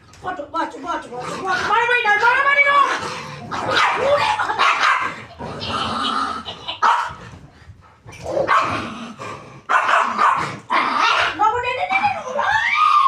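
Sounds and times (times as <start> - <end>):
dog barking: 3.7 - 5.2, 6.8 - 7.2, 8.4 - 8.8, 9.7 - 11.4.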